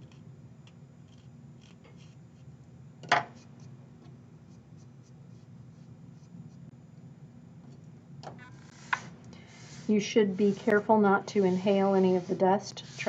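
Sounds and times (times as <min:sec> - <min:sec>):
tool scraping ceramic: 0:08.4 - 0:13.0.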